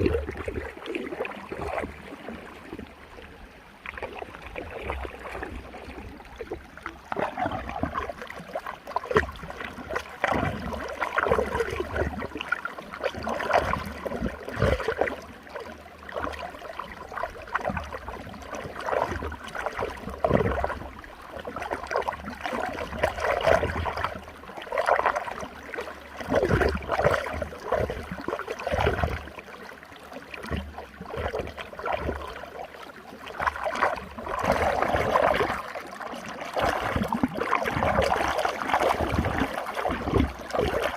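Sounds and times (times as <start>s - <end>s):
water swirling and gurgling: 0.0s - 40.9s.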